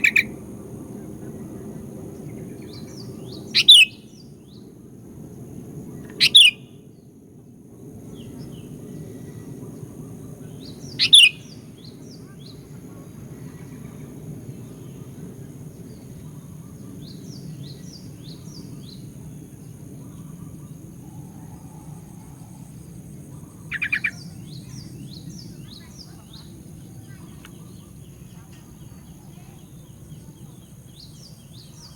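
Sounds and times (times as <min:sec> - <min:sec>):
bird calling: 0:00.0 - 0:00.4, 0:02.7 - 0:04.1, 0:06.1 - 0:06.6, 0:10.6 - 0:12.7, 0:20.0 - 0:29.1
faint bird chirps: 0:00.0 - 0:00.4, 0:02.2 - 0:04.7, 0:06.0 - 0:07.1, 0:08.1 - 0:31.9
low background noise: 0:00.0 - 0:31.9.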